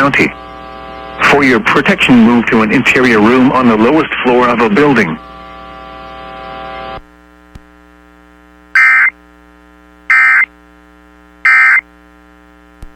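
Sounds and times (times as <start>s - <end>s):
radio reception hum: 0.0s - 12.9s
screeching digital data tones: 8.8s - 9.1s, 10.1s - 10.5s, 11.5s - 11.8s.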